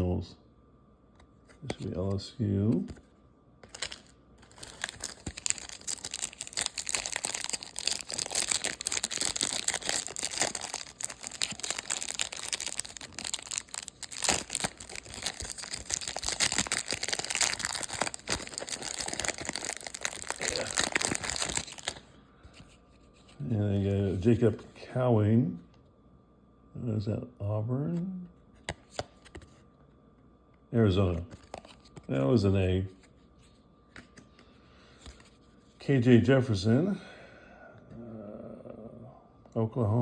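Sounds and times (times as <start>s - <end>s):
card packaging crinkling: 3.6s - 22.1s, 31.1s - 32.2s.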